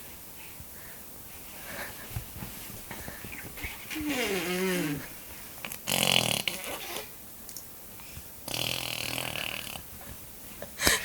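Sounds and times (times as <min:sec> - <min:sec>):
baby blowing raspberries: 0:03.6 - 0:07.1.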